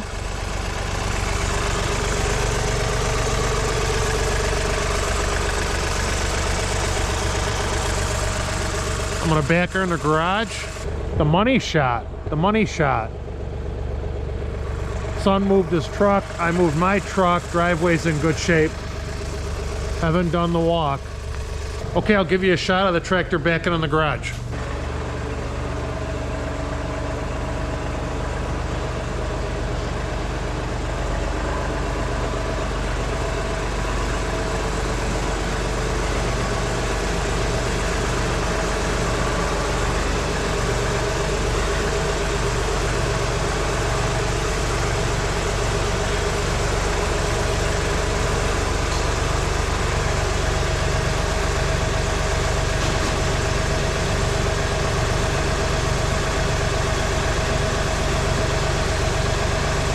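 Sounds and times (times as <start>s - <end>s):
diesel tractor engine running: 0.0s - 59.9s.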